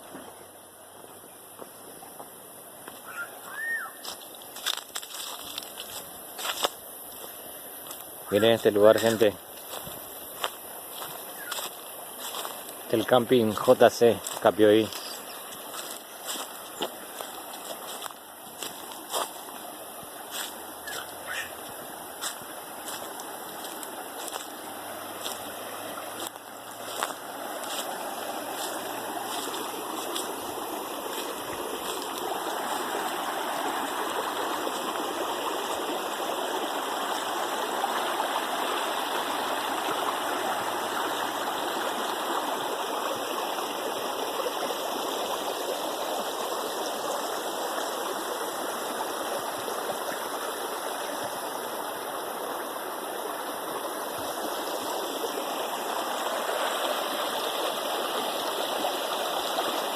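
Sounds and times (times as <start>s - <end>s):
stream water rushing: 1.4s - 59.9s.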